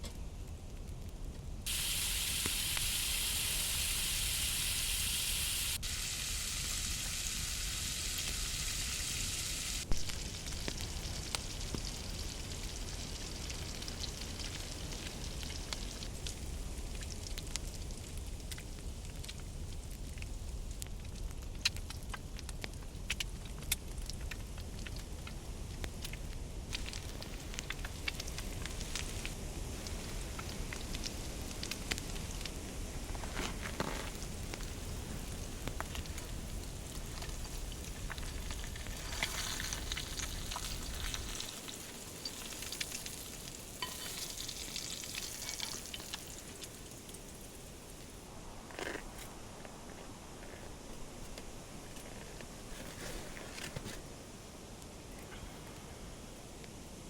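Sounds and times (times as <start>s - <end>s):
wood fire crackling: 0.0s - 57.0s
food sizzling in a pan: 1.7s - 16.2s, 34.2s - 48.1s.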